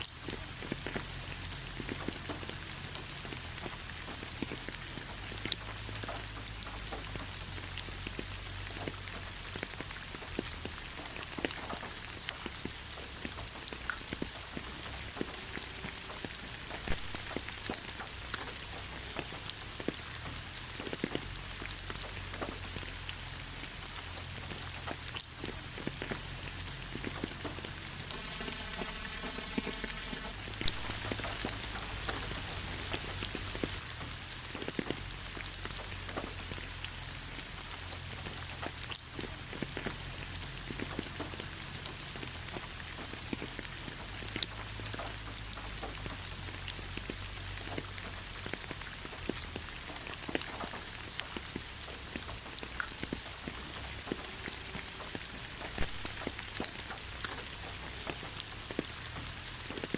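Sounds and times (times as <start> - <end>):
rain drops tapping: 0.0 - 59.9
faint pitched buzz: 27.8 - 32.9.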